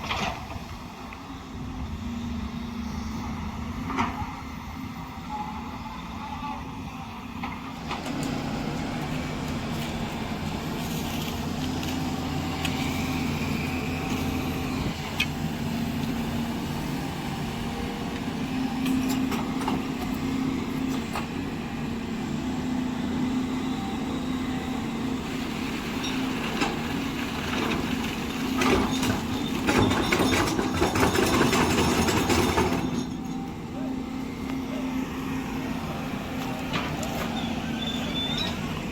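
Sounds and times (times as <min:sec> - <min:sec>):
construction machinery diesel engine: 0:00.0 - 0:38.9.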